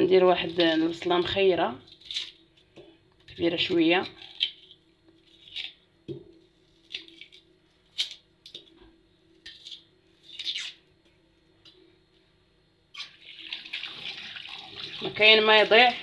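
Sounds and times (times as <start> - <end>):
onion skin crackling: 0.0 - 2.7, 3.6 - 5.8, 6.5 - 8.2
kitchen tap running: 13.2 - 16.0.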